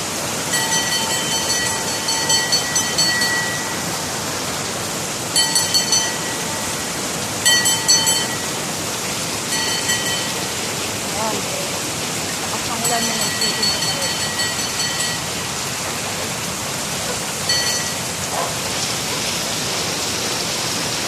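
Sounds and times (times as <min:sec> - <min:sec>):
heavy rain pouring: 0:00.0 - 0:21.0
handbell ringing: 0:00.5 - 0:04.0, 0:05.4 - 0:08.7, 0:09.5 - 0:10.6, 0:12.8 - 0:15.5, 0:17.5 - 0:18.1.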